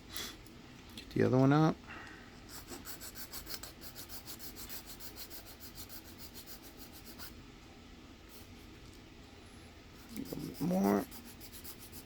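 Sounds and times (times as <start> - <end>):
hand file rasping on metal: 2.5 - 7.3, 10.0 - 12.0.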